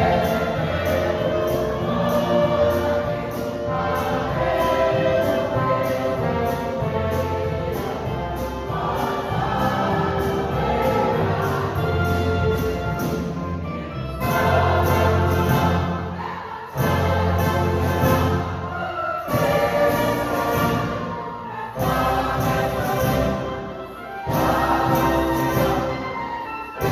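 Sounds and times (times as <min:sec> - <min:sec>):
choir singing: 0:00.0 - 0:26.9
orchestra playing: 0:00.0 - 0:26.9.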